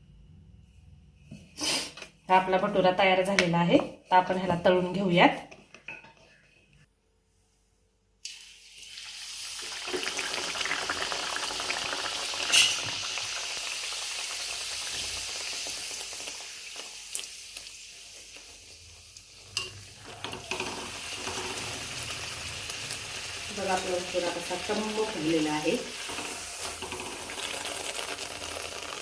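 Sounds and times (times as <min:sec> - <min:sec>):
bread sizzling in hot oil: 0:08.2 - 0:29.0.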